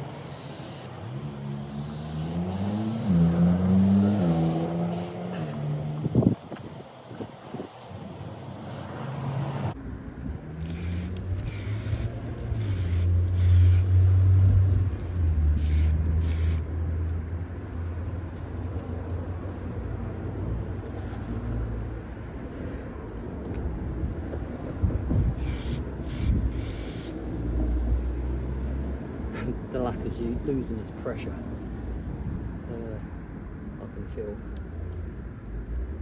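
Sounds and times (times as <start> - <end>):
aerosol can spraying: 0.0 - 5.8, 7.2 - 8.0, 8.6 - 9.8, 10.7 - 13.9, 15.6 - 16.6, 25.4 - 27.1.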